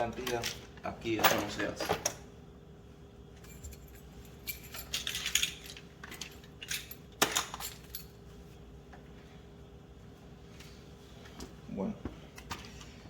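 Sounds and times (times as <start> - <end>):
faint steady hum: 0.0 - 13.0.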